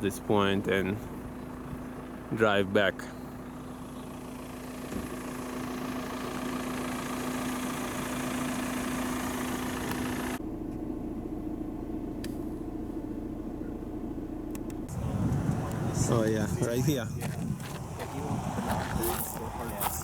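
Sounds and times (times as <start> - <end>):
road noise hiss: 0.0 - 10.4, 14.8 - 20.0
car engine hum: 0.0 - 20.0.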